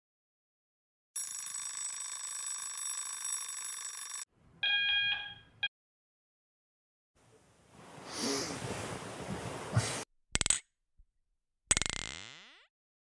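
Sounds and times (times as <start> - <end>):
bell ringing: 4.6 - 5.7.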